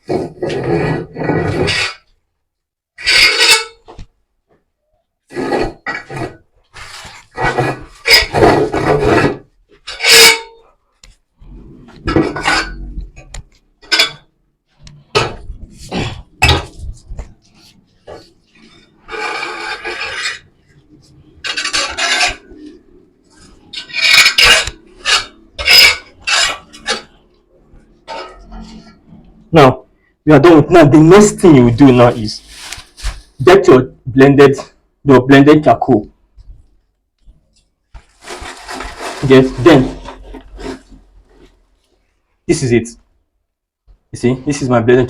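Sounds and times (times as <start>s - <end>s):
scraping sawdust litter: 38.2s - 41.0s.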